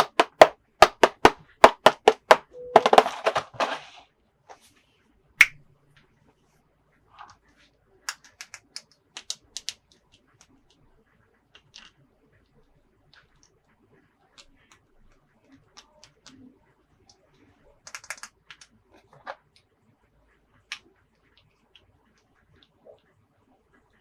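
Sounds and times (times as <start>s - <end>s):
plastic toy pieces clicking: 8.1s - 9.8s, 17.9s - 18.7s.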